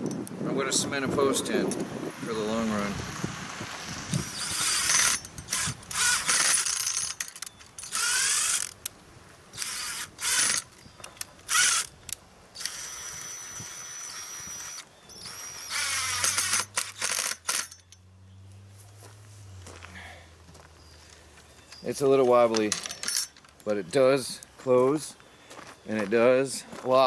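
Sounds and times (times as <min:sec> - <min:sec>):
power drill driving screws: 0:03.1 - 0:08.8, 0:09.6 - 0:10.7, 0:11.5 - 0:12.0, 0:12.6 - 0:17.8.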